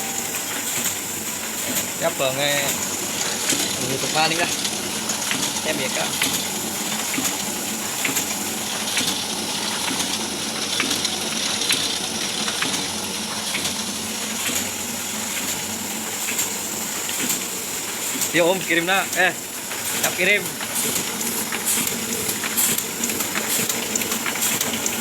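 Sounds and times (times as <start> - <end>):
printing press running: 0.0 - 25.0.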